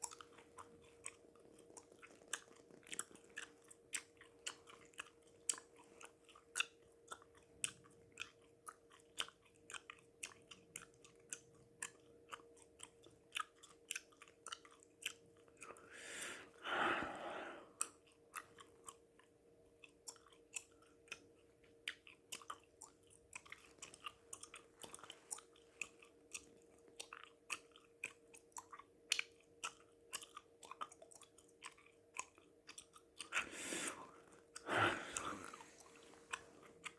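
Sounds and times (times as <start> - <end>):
faint steady hum: 0.0 - 36.9
gum chewing: 0.0 - 36.9
heavy breath: 15.8 - 17.8, 33.3 - 36.3.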